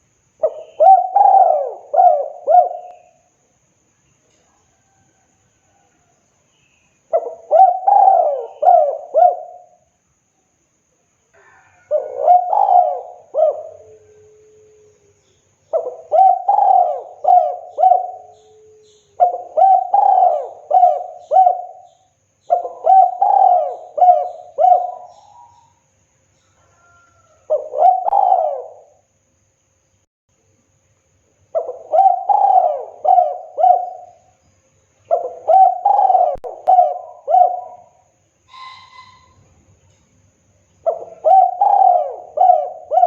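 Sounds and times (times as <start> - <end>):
dove cooing: 0.0 - 3.3, 7.1 - 9.8, 11.4 - 14.9, 15.7 - 25.7, 26.7 - 29.1, 31.5 - 34.3, 35.1 - 39.4, 40.8 - 43.0.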